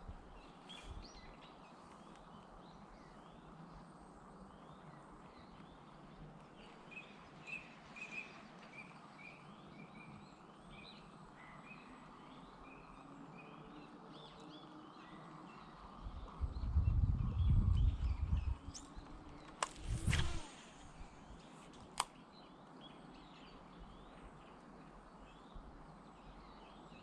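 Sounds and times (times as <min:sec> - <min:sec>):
faint outdoor hiss: 0:00.0 - 0:27.0
small birds chirping: 0:00.0 - 0:27.0
low microphone rumble: 0:16.0 - 0:18.7.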